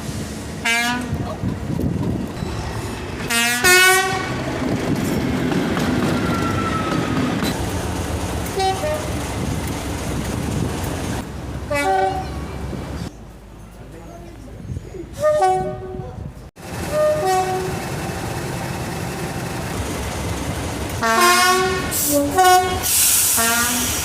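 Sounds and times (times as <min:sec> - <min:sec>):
diesel engine rumble: 0:00.0 - 0:24.0
locomotive two-tone horn: 0:00.6 - 0:01.2, 0:03.3 - 0:04.5, 0:08.5 - 0:09.1, 0:11.7 - 0:12.5, 0:15.2 - 0:16.2, 0:16.8 - 0:17.8, 0:21.0 - 0:24.0.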